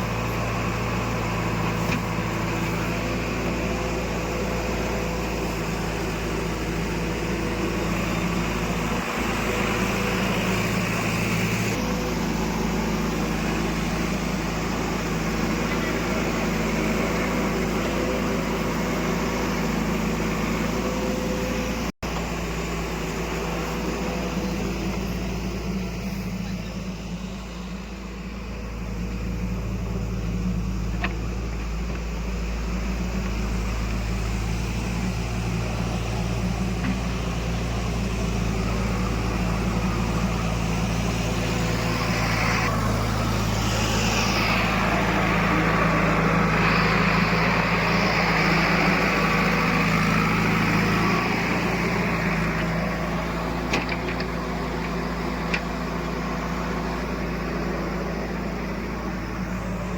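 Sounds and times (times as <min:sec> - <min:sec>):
heavy diesel machinery running: 0:00.0 - 0:59.9.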